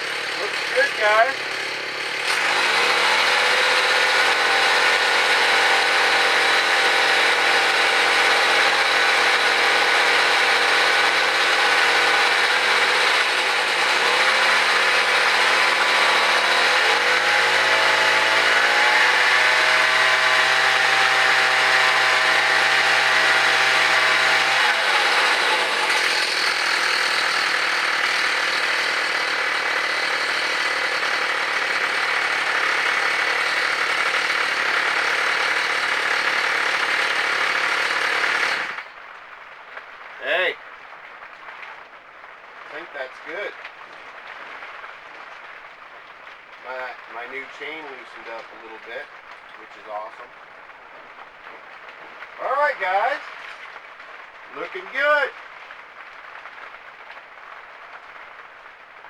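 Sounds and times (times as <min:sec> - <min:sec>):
small gasoline engine running: 0:00.0 - 0:38.9
person talking: 0:00.4 - 0:01.4, 0:46.6 - 0:50.3, 0:52.4 - 0:53.3, 0:54.5 - 0:55.3.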